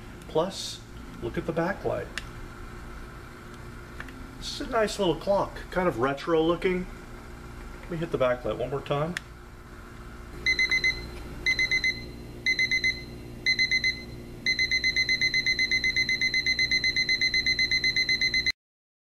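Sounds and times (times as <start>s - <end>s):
alarm clock beeping: 10.4s - 18.5s.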